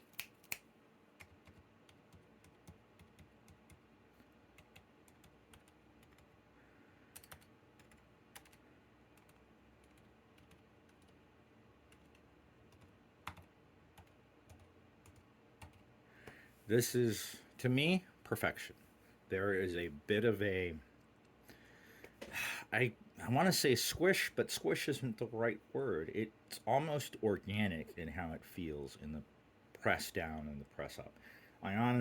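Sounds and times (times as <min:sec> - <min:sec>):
muffled keyboard typing: 0:01.2 - 0:03.9, 0:04.5 - 0:06.4, 0:07.1 - 0:11.2, 0:11.9 - 0:15.9.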